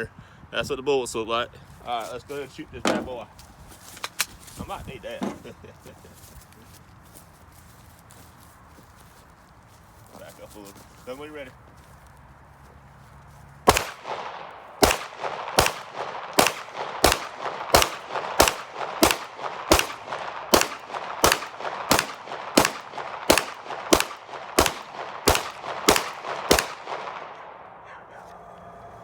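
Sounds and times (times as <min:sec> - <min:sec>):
pistol shots with echo: 0:13.7 - 0:27.8.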